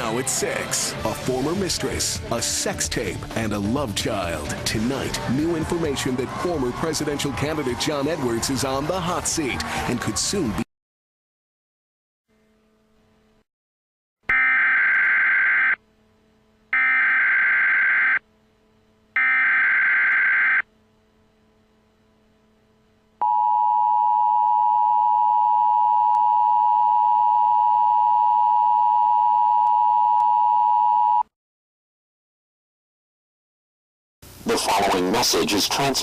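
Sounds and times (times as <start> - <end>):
long steady attention tone: 14.3 - 31.3
harsh buzzy digital data bursts: 16.7 - 18.2, 19.2 - 20.6.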